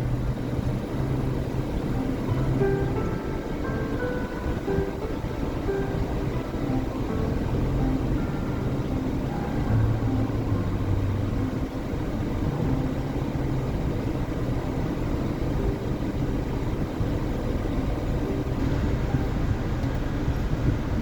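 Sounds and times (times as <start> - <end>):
low engine drone: 0.0 - 21.0
train rumbling past: 0.0 - 21.0.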